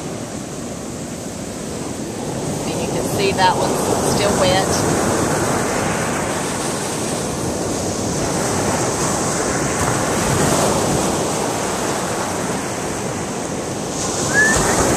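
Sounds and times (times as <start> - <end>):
ocean surf washing ashore: 0.0 - 14.9
wind buffeting microphone: 0.0 - 14.9.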